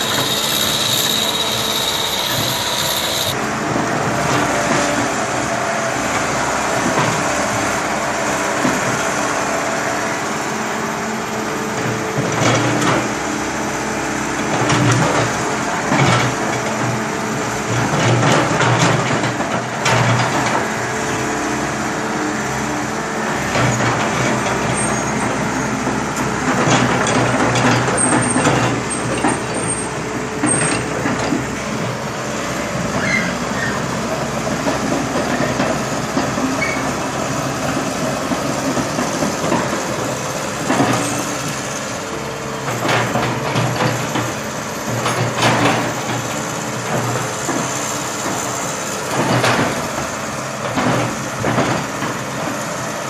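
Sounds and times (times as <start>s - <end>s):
diesel engine running: 0.0s - 53.0s
machine clanks and knocks: 17.7s - 20.6s, 26.2s - 32.0s, 37.7s - 41.4s, 42.6s - 52.5s.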